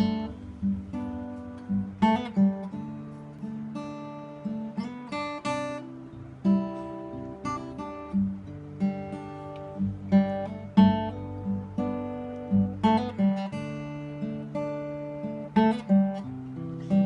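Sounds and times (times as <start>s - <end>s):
acoustic guitar playing: 0.0s - 17.0s.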